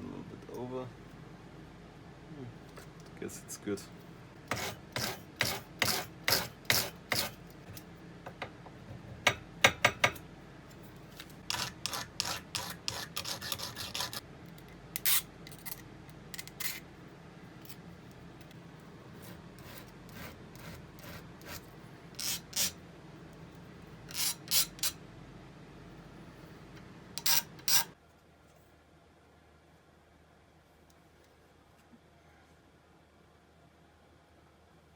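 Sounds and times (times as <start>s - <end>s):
hand file scraping: 4.5s - 7.4s, 11.5s - 14.2s, 22.2s - 22.8s.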